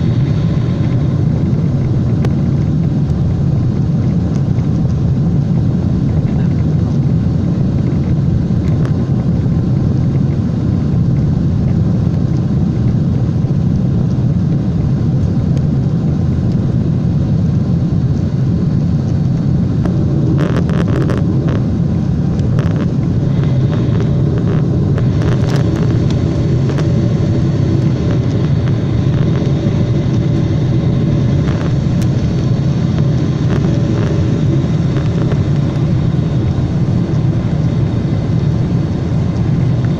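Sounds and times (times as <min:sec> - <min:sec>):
airliner cabin engine rumble: 0:00.0 - 0:39.9
faint whining tones: 0:18.1 - 0:39.9.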